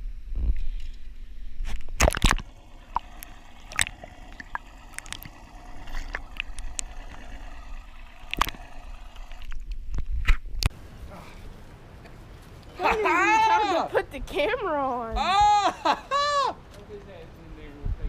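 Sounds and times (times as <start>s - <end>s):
water gurgling and dripping: 2.0s - 10.0s.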